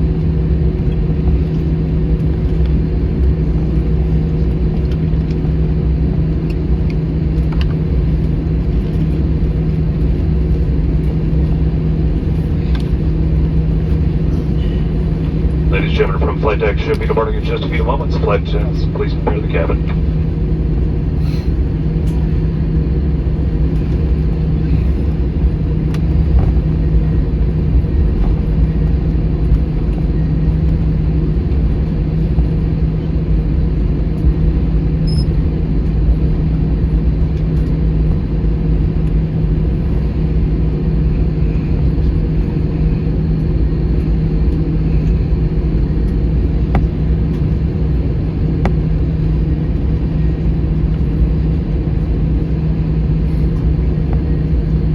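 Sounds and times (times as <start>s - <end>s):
aircraft cabin engine drone: 0.0s - 54.9s.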